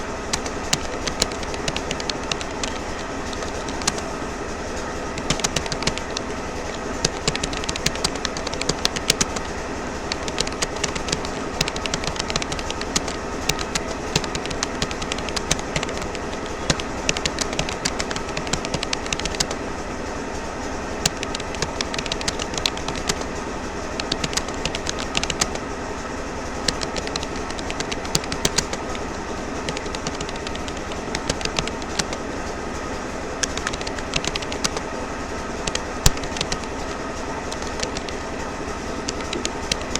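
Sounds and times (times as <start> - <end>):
background hum: 0.0 - 39.9
keyboard typing clicks: 0.3 - 4.1, 5.1 - 19.6, 21.0 - 25.7, 26.6 - 32.3, 33.4 - 35.0, 35.6 - 39.9.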